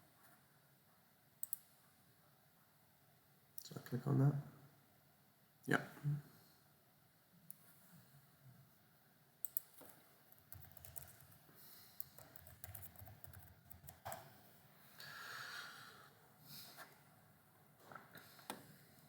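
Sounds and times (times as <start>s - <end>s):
computer mouse clicking: 1.4s - 1.7s, 9.4s - 11.4s, 12.0s - 14.3s
keyboard tapping: 9.8s - 11.4s, 12.0s - 14.3s.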